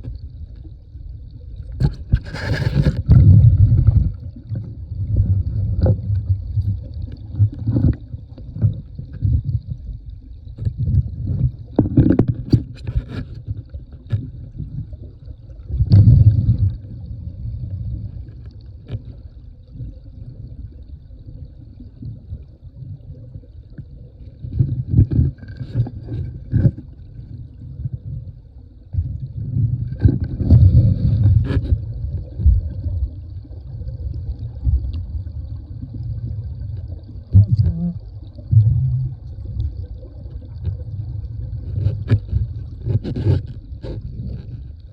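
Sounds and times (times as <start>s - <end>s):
gravel knocking and scraping: 1.8s - 3.2s.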